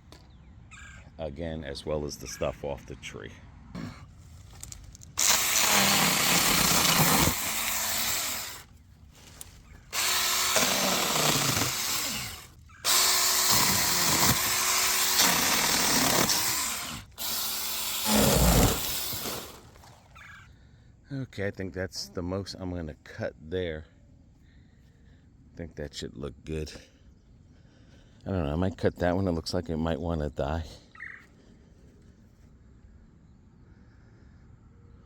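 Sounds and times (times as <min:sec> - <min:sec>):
power saw cutting palm fronds: 0:05.2 - 0:20.1.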